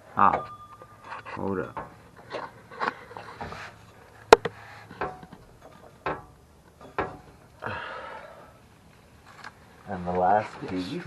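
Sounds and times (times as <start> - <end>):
metal parts knocking and clunking: 0.3 - 3.6, 4.3 - 7.5.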